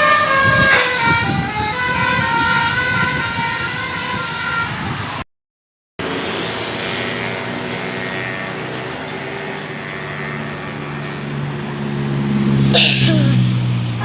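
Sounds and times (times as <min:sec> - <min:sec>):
diesel bus engine humming: 0:06.0 - 0:14.0.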